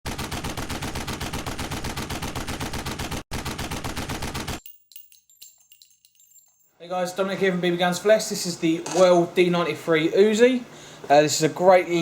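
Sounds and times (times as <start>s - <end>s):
automatic gunfire: 0.1s - 4.6s.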